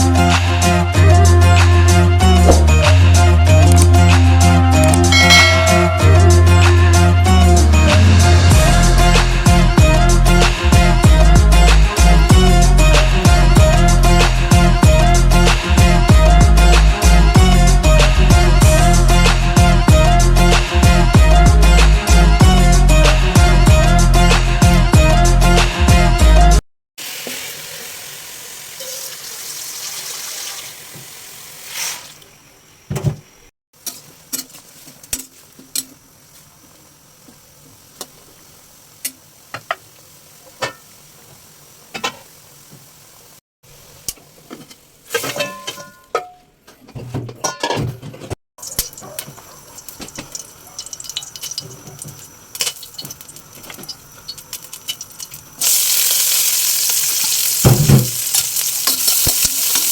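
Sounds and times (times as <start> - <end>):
utensils clinking on cookware: 5.2 - 6.4, 44.7 - 46.5, 47.4 - 49.3, 57.2 - 59.9
water running: 5.2 - 7.0, 27.0 - 33.0, 48.6 - 59.9
food sizzling in a pan: 27.0 - 32.6, 33.8 - 45.2, 48.6 - 59.9.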